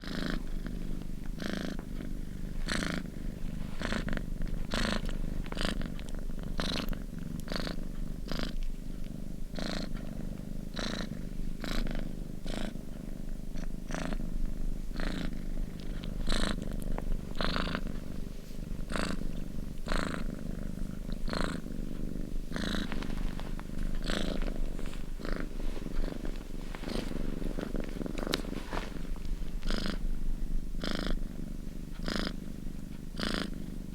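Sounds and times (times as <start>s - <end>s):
cat purring: 0.0s - 33.9s.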